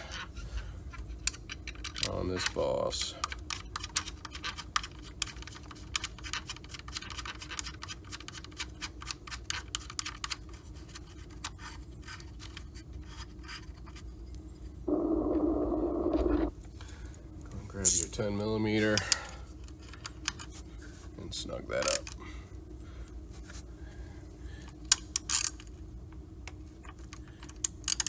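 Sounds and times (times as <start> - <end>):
steady whirring noise: 14.6 - 16.5.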